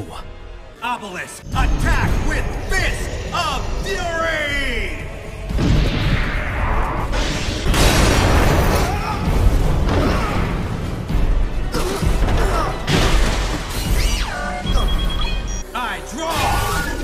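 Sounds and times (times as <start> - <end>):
dramatic background music: 0.0 - 17.0
booming blasts and crashes: 5.4 - 14.2.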